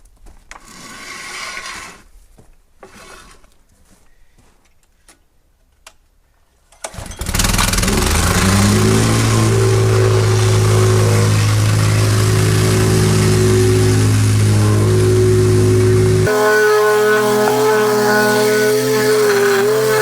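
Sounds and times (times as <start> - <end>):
plate compactor engine running: 6.9 - 20.0.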